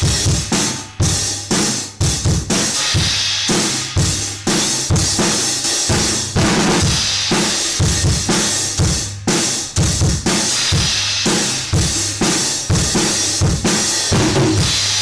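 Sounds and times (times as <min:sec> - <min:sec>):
kick drum and snare hits: 0:12.7 - 0:15.0.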